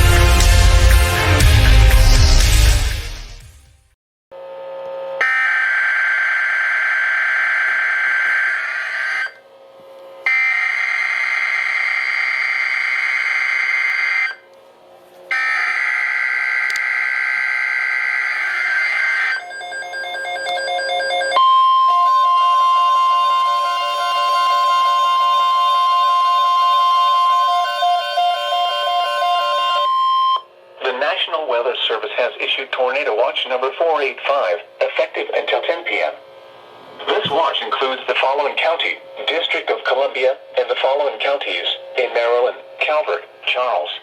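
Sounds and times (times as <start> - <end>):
steady attention tone: 18.4 - 31.1
other tones: 18.6 - 30.5.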